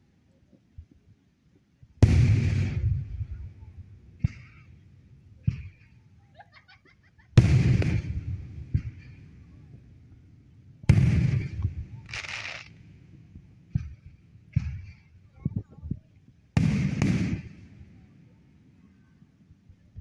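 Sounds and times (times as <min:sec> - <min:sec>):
fireworks booming: 0:02.0 - 0:06.1, 0:07.3 - 0:10.2, 0:10.8 - 0:15.2, 0:16.6 - 0:18.4
small firework pops: 0:07.4 - 0:09.2, 0:10.9 - 0:13.0, 0:16.6 - 0:17.8.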